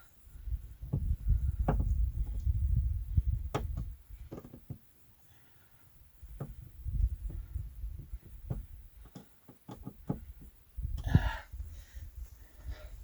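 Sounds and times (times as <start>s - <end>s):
light clicks and knocks: 3.5s - 4.8s, 6.3s - 10.5s.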